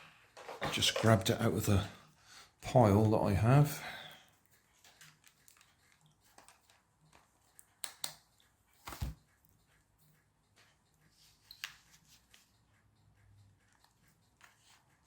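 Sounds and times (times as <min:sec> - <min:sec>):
faint small clicks and taps: 0:04.8 - 0:09.8.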